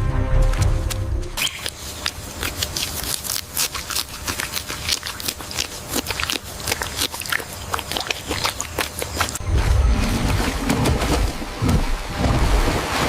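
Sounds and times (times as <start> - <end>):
low rumble: 9.4 - 13.0.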